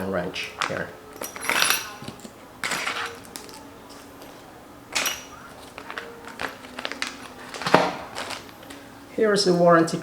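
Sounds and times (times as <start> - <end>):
paper packaging rustling: 5.0 - 8.9.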